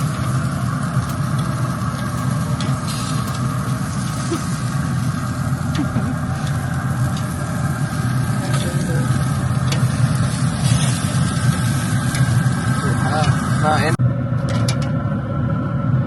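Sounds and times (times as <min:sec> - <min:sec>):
fan motor humming: 0:00.0 - 0:10.4
light clicks: 0:03.2 - 0:04.5.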